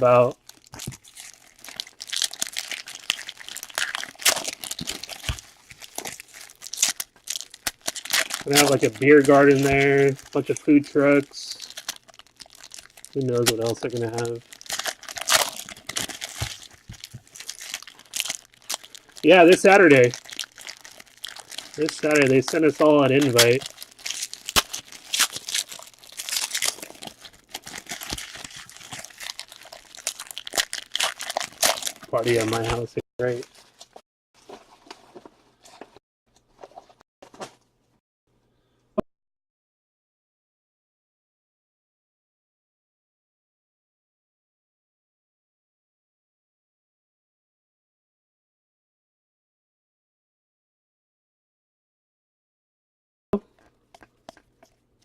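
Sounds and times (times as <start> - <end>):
plastic wrappers crinkling and tearing: 0.0 - 34.6.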